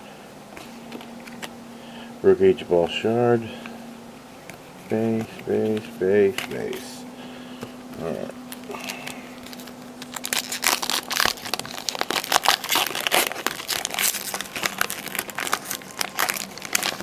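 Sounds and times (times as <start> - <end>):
wrapper tearing and crinkling: 8.0 - 17.0.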